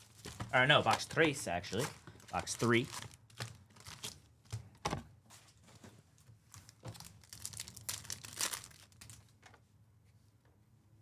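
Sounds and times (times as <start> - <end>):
plastic wrapping crinkling and tearing: 0.0 - 4.6, 6.2 - 9.4.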